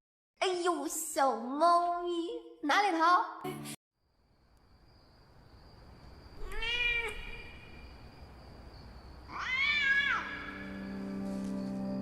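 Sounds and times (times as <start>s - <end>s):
cat meowing: 6.4s - 7.6s, 9.3s - 10.6s.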